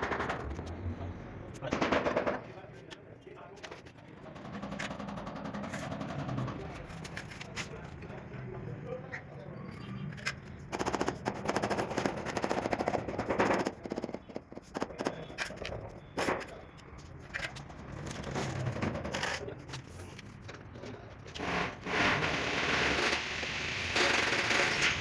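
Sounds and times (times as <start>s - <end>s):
grinding noise: 21.3s - 25.0s.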